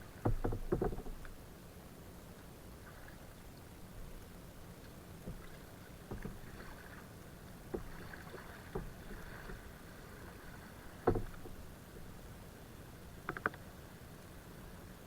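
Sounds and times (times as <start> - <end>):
faint steady background noise: 0.0 - 15.0
light knocks on a kayak: 0.2 - 1.4, 5.2 - 6.5, 11.0 - 11.6.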